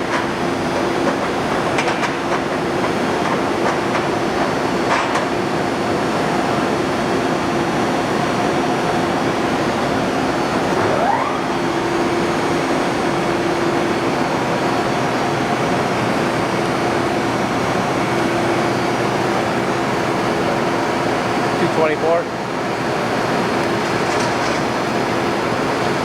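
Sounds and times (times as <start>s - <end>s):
milling machine running: 0.0s - 26.0s
rising whine: 10.0s - 15.0s.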